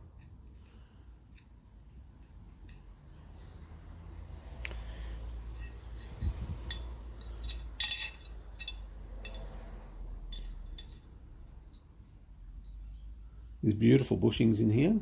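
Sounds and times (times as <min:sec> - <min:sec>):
metal parts clinking: 0:05.5 - 0:11.1.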